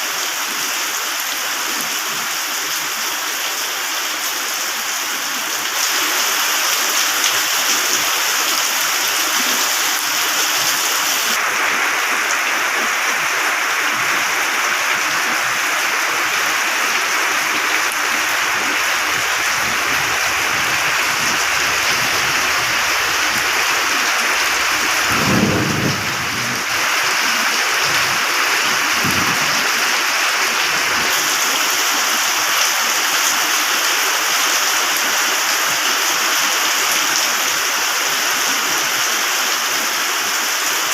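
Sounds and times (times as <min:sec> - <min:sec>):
heavy rain: 0:00.0 - 0:40.9
thunder rumble: 0:17.3 - 0:29.9.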